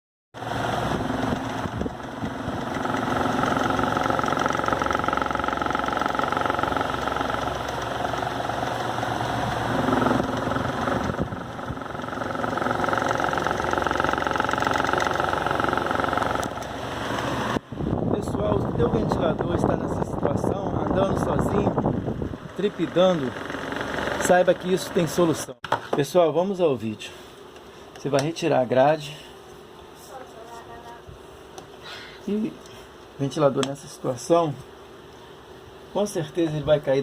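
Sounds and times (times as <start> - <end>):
electric fan rattling: 0.4 - 26.8.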